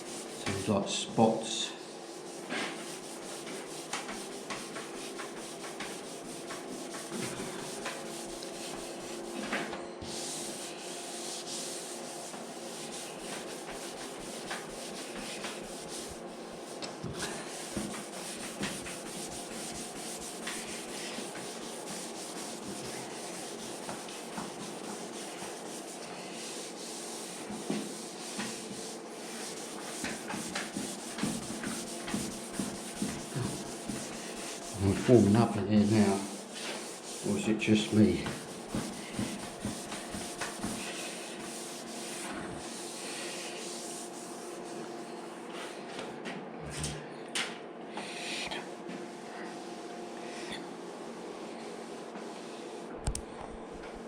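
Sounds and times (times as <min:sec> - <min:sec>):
sandpaper rubbing on panel: 0:00.0 - 0:00.5, 0:01.5 - 0:09.4, 0:10.1 - 0:44.6.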